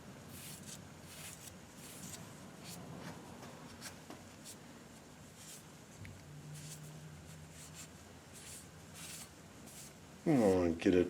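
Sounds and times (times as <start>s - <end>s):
scratchy rubbing on wood: 7.6s - 10.6s.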